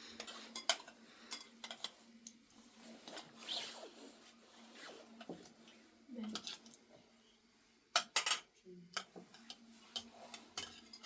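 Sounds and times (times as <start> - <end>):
faint steady hum: 0.0 - 11.0
dishes clicking and knocking: 0.2 - 1.9, 7.9 - 11.0.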